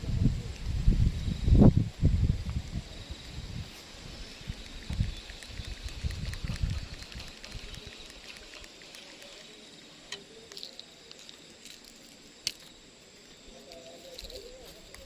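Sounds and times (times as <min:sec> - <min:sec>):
sharp clicks: 0:04.5 - 0:09.4.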